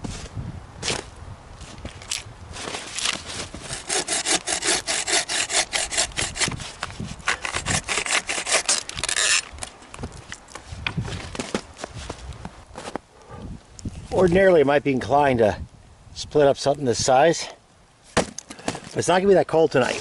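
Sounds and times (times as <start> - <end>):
hand saw cutting wood: 3.0 - 9.5.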